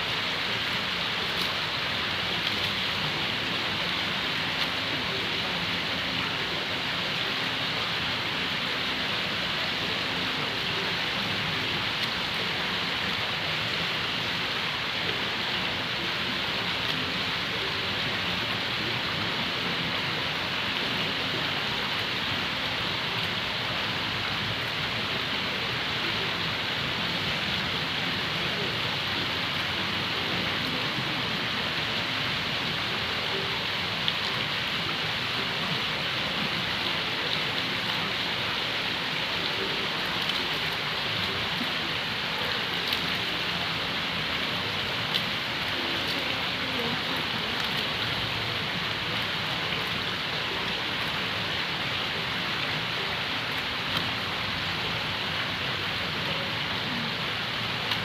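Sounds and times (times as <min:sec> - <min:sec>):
steady hiss: 0:00.0 - 0:58.0.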